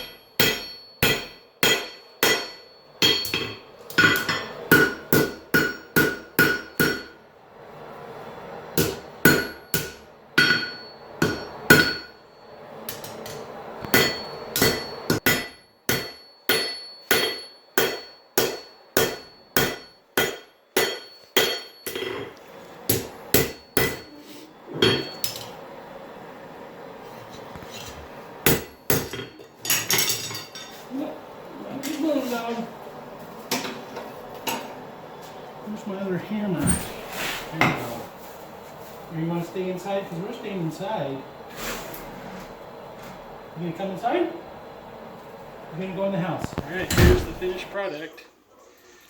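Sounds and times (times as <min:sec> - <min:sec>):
hammer striking metal on anvil: 0:00.0 - 0:07.2, 0:08.8 - 0:12.2, 0:12.9 - 0:22.2, 0:22.9 - 0:24.1, 0:24.8 - 0:25.5, 0:28.4 - 0:30.7.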